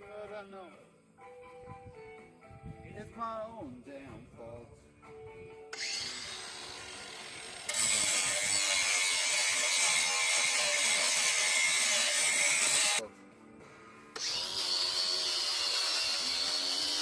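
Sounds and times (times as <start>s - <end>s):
angle grinder grinding metal: 5.8s - 13.0s, 14.2s - 17.0s.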